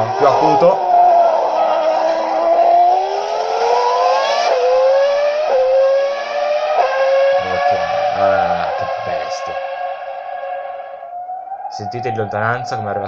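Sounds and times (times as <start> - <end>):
racing car engine at high revs: 0.0 - 10.6.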